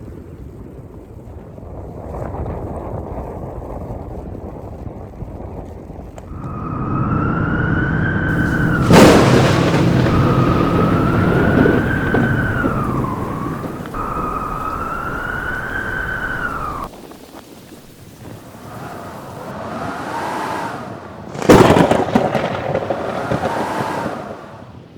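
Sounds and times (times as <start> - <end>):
steady wind: 0.0 - 24.9
sudden loud crash: 6.4 - 16.9, 21.3 - 23.6
wolf howling: 6.4 - 16.9.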